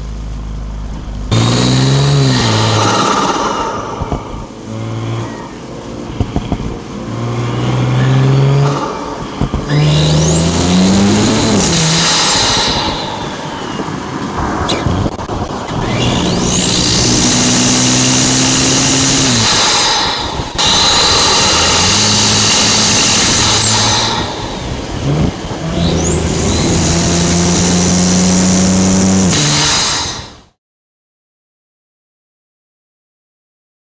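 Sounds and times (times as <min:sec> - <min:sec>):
car engine and exhaust accelerating: 0:00.0 - 0:30.5
turbo whistle: 0:08.0 - 0:15.1, 0:15.7 - 0:30.4.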